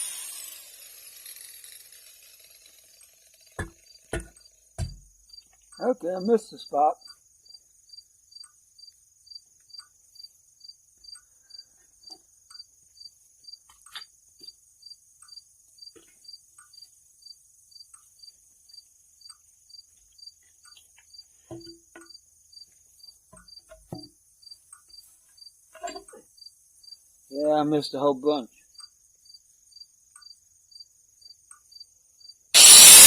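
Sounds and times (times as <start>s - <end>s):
cricket chirping: 3.6s - 33.0s
faint knocks and taps: 20.7s - 22.1s, 23.3s - 24.2s.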